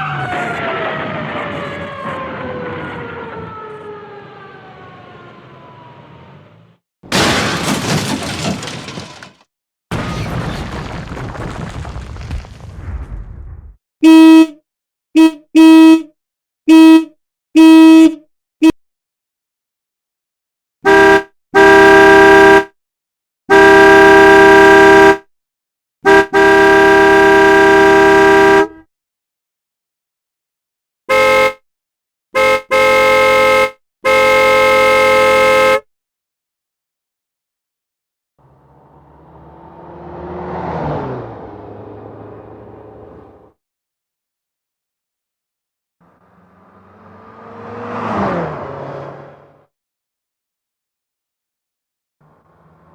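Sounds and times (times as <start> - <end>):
car crash smash and shattering: 7.0 - 13.6
car horn honking: 14.0 - 14.6, 15.2 - 16.1, 16.7 - 18.8, 20.8 - 22.8, 23.5 - 25.3, 26.0 - 28.8, 31.1 - 31.6, 32.4 - 35.9
car driving away: 38.4 - 43.5, 46.0 - 49.7, 52.2 - 52.9.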